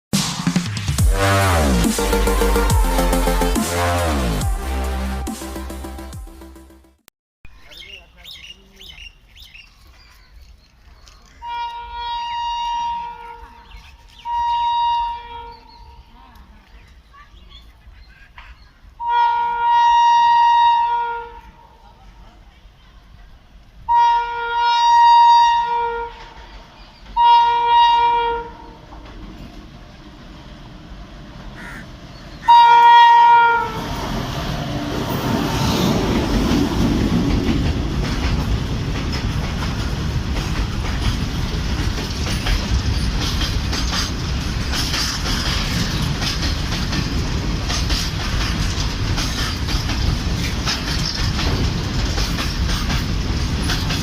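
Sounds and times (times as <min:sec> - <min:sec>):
locomotive horn blasts: 0:01.1 - 0:03.0, 0:11.4 - 0:13.6, 0:14.2 - 0:15.7, 0:19.0 - 0:21.6, 0:23.9 - 0:26.2, 0:27.2 - 0:28.8, 0:32.4 - 0:34.0
train wheels rumbling on rails: 0:25.5 - 0:54.0.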